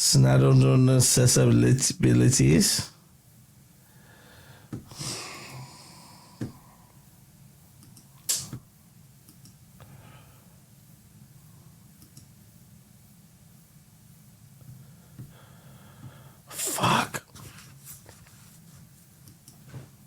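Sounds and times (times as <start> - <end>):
low steady hum: 0.0 - 20.0
soft clicks: 9.3 - 9.6, 12.0 - 12.3.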